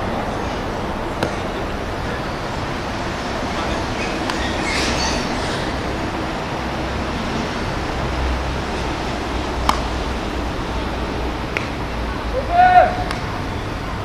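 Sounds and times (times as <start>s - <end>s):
low rumbling background noise: 0.0s - 14.0s
sharp crack: 9.6s - 9.9s.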